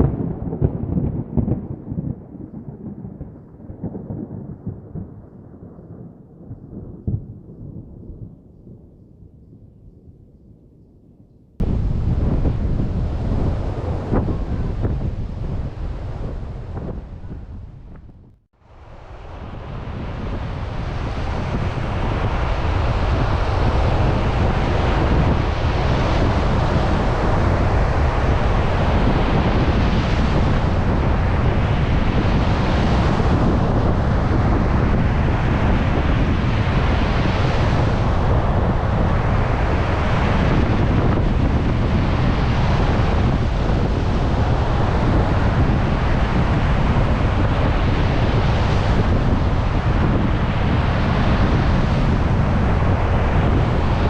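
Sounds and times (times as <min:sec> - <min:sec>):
strong wind buffeting microphone: 0:00.0 - 0:54.0
waves breaking on a beach: 0:11.6 - 0:17.2, 0:18.6 - 0:54.0.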